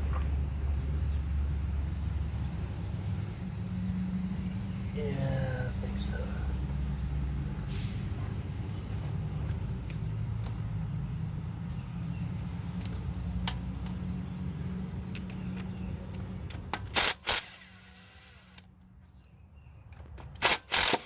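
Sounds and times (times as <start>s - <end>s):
engine parts clacking: 12.4s - 21.0s.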